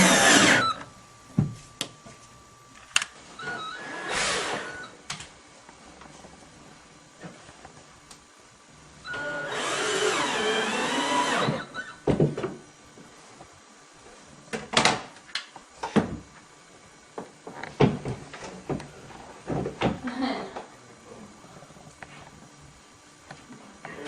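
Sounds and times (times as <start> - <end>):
power drill running: 0.0 - 0.9, 3.4 - 5.0, 9.1 - 12.0.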